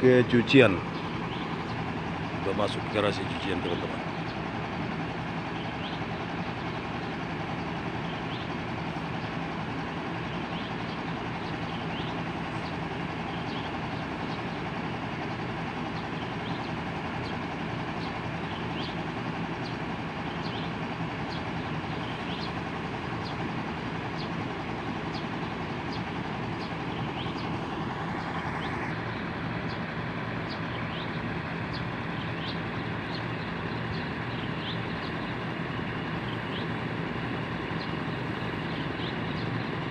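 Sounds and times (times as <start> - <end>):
vehicle engine humming: 0.0 - 39.9.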